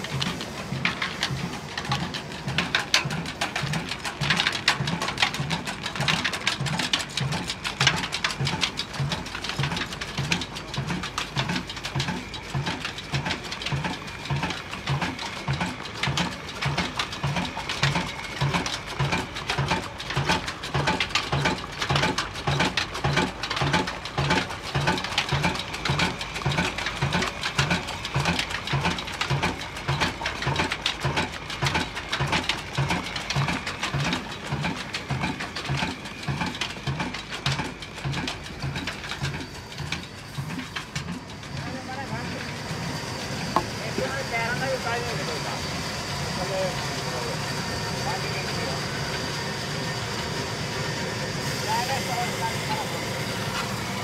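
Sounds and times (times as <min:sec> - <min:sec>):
stationary diesel engine thumping: 0:00.0 - 0:54.0.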